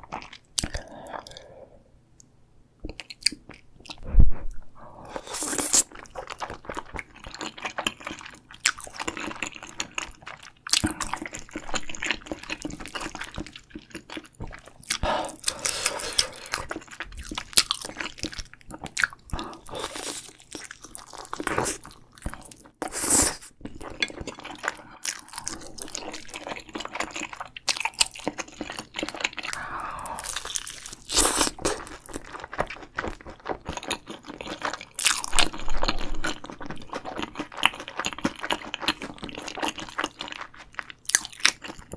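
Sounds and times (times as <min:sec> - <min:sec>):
crunchy bites and chewing: 0:24.0 - 0:41.9.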